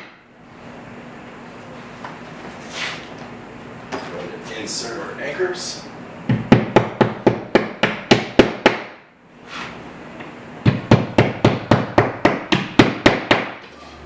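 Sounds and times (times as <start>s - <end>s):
hammer tapping wall anchors: 6.3s - 9.0s, 10.6s - 13.6s.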